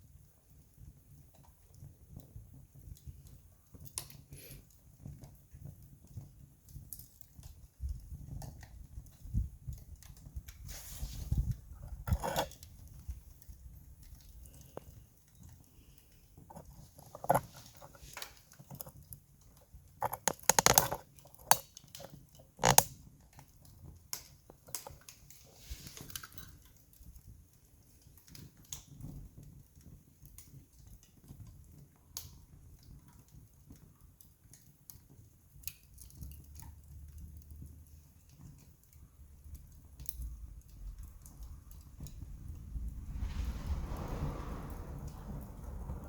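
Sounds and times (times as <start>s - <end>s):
low rumble of flames: 4.8s - 20.2s, 35.7s - 46.0s
campfire crackling and popping: 4.9s - 46.0s.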